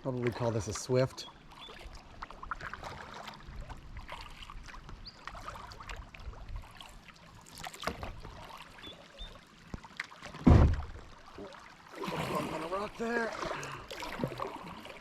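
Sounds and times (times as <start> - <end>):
paddle strokes splashing water: 0.0 - 15.0
hull bumping a rock: 10.3 - 11.1.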